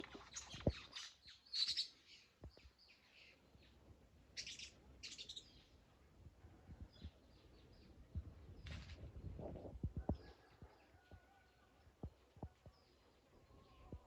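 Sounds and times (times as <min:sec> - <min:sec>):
birds chirping: 0:00.0 - 0:03.8.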